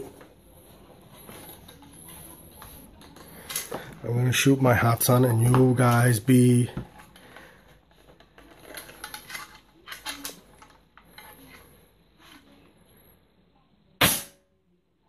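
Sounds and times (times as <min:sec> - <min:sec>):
rifle handling clicks and rattles: 0:01.4 - 0:03.9, 0:07.9 - 0:11.4
air rifle shot: 0:14.0 - 0:14.4.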